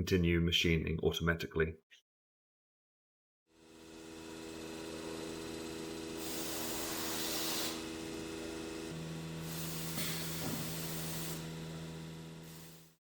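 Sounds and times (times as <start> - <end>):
router motors whining: 3.6 - 13.0.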